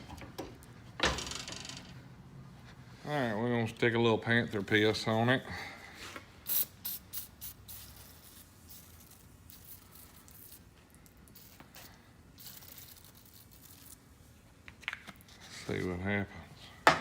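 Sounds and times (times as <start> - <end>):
aerosol can spraying: 6.5 - 10.6, 11.3 - 14.0.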